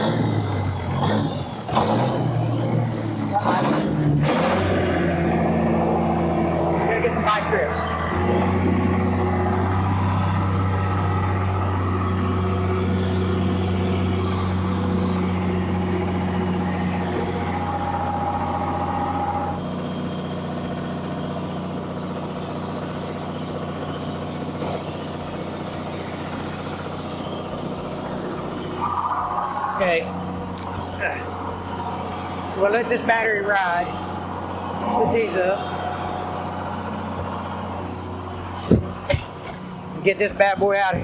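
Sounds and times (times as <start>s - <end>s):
diesel engine running: 0.0s - 41.0s.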